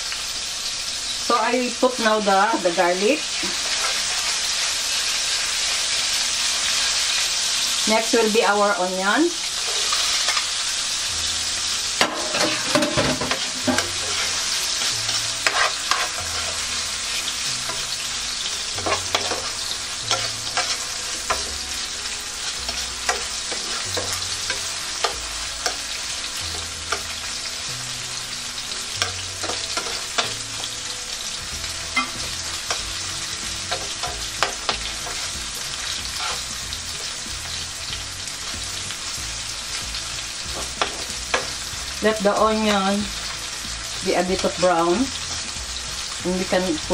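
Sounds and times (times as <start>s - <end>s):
onion and garlic sizzling in oil: 0.0s - 46.9s
utensil scraping a pan: 3.3s - 4.6s, 9.5s - 10.6s, 12.0s - 27.4s, 29.0s - 30.8s, 31.8s - 37.2s.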